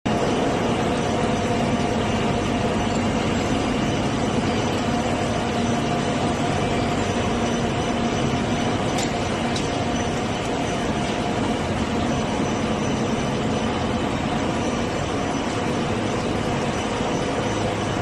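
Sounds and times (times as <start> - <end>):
constant hum: 0.1 - 18.0.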